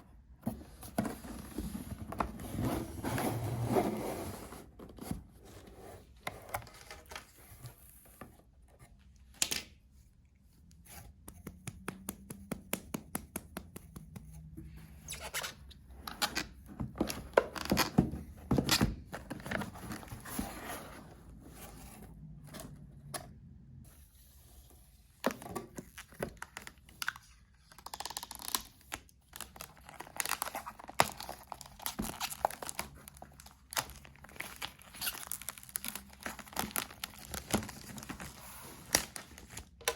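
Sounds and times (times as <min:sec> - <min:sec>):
wrapping tearing and crinkling: 0:26.4 - 0:39.9.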